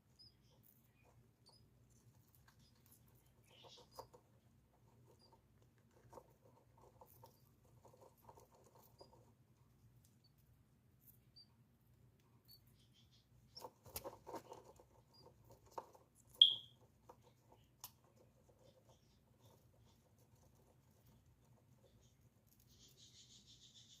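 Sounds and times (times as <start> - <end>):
small animals scratching and rustling: 0.0 - 11.4, 12.2 - 24.0
short high chirp: 16.4 - 16.7.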